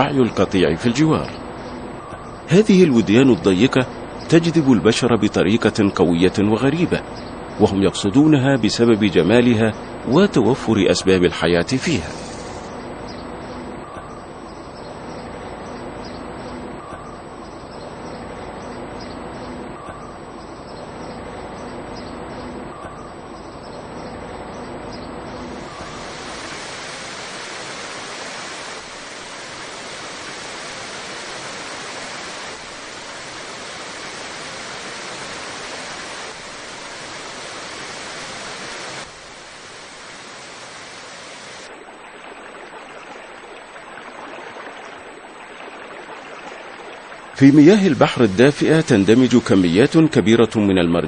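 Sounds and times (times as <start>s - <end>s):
rushing river water: 25.5s - 50.8s.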